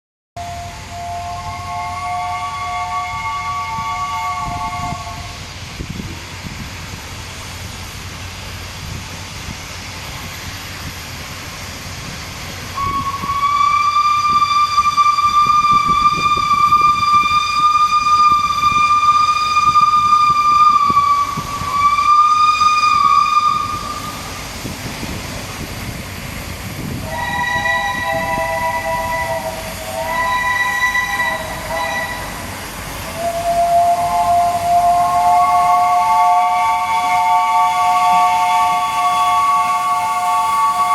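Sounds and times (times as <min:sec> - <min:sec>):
train whistle: 0:00.4 - 0:05.4, 0:12.7 - 0:24.4, 0:27.0 - 0:40.9
train rumbling: 0:00.4 - 0:40.9.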